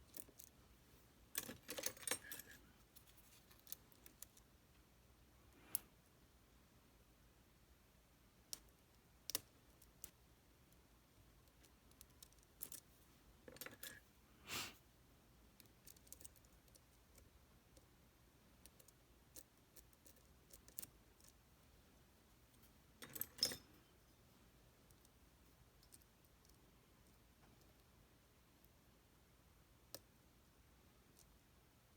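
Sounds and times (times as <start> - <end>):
metal clicks of lock picking tools: 1.4 - 2.6, 23.0 - 23.8.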